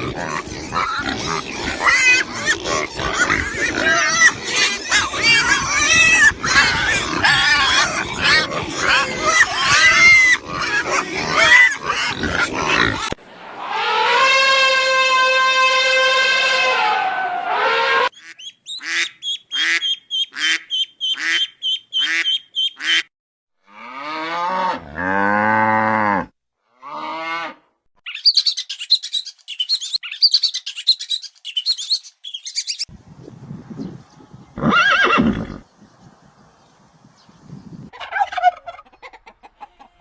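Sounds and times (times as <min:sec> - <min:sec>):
low drawn-out animal calls: 0:00.0 - 0:18.1
loud animal call: 0:00.0 - 0:23.0
short bird calls: 0:18.1 - 0:22.9
rapid high chirping: 0:18.2 - 0:22.9, 0:28.1 - 0:32.9.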